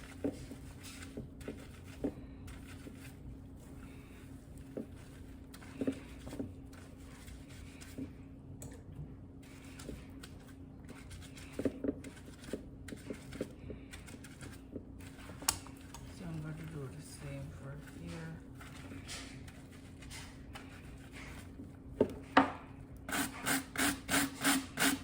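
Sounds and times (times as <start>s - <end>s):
brushing a wet wig: 0.0s - 8.2s, 16.2s - 21.6s
steady low hum: 0.0s - 23.2s.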